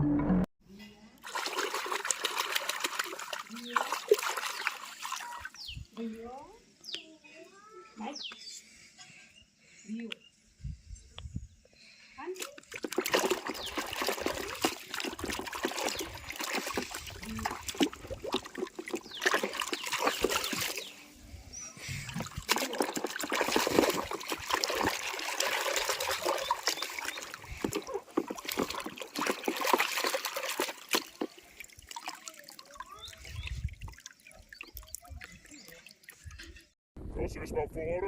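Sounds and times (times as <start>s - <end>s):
water trickling and splashing: 1.2s - 6.4s, 12.3s - 21.2s, 21.8s - 36.8s.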